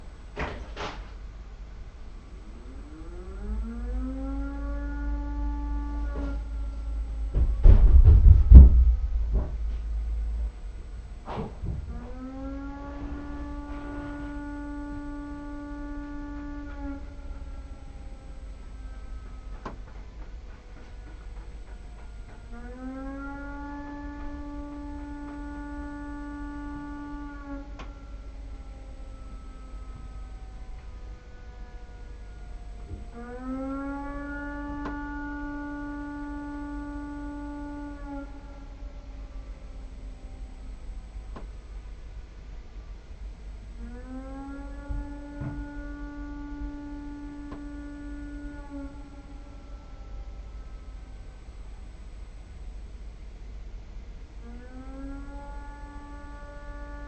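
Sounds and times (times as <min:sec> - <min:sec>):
siren wailing: 0:01.8 - 0:53.6, 0:54.3 - 0:57.0
low rumbling and knocks: 0:03.8 - 0:36.2, 0:43.6 - 0:49.4.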